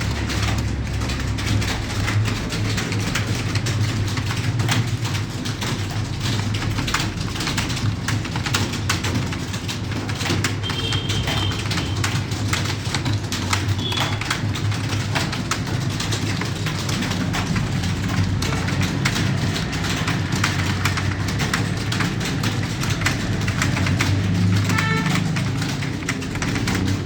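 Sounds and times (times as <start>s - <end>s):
fast keyboard typing: 0.0s - 27.0s.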